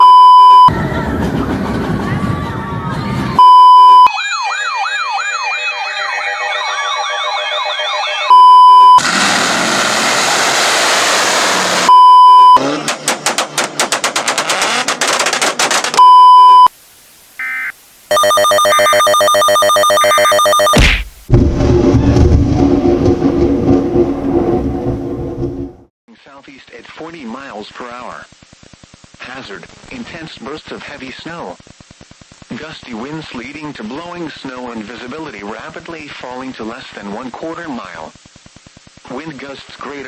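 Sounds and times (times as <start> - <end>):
loud steady beep: 0.0 - 0.7, 3.4 - 4.1, 8.2 - 9.0, 11.9 - 12.6, 16.0 - 16.7, 17.4 - 21.0
wailing siren: 4.0 - 9.1
burst of hiss: 9.0 - 11.9
rapid clicks: 12.8 - 16.0.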